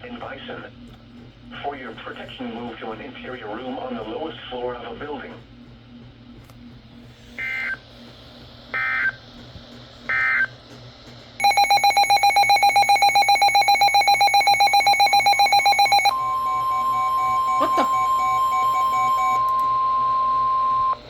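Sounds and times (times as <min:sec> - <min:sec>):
digital data tone bursts: 0:11.4 - 0:21.0
rapidly pulsing alarm tone: 0:11.4 - 0:21.0.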